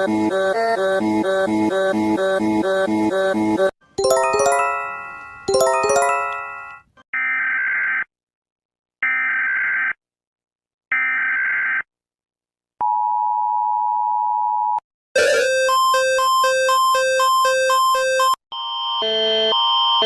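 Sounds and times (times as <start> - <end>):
ringing chime strikes: 4.0 - 6.8.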